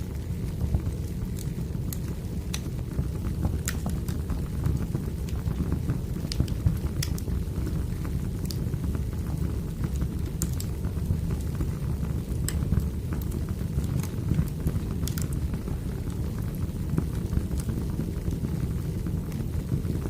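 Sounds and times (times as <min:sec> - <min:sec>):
burning wood crackling and popping: 0:00.0 - 0:20.0
low rumble of fire: 0:00.0 - 0:20.0.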